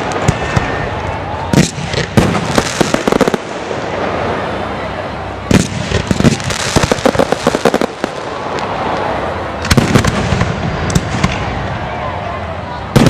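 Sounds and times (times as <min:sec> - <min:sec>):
fireworks bursting: 0:00.0 - 0:11.8
background noise: 0:00.0 - 0:13.0.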